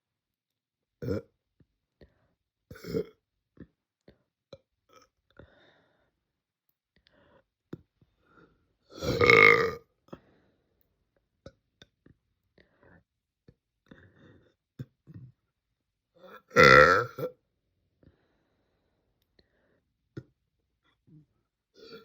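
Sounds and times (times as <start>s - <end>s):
girl burping: 9.0s - 9.8s, 16.5s - 17.3s.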